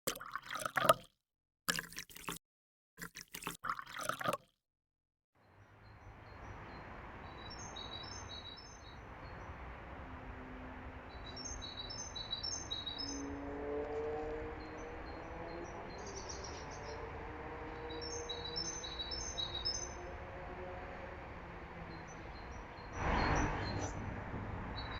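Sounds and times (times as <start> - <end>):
songbird singing: 5.4 - 24.9.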